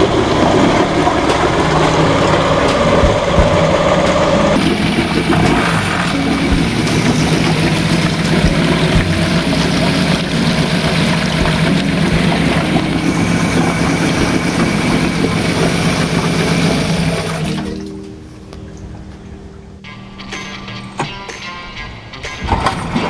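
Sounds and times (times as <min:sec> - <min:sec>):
outboard motor running: 0:00.0 - 0:17.7.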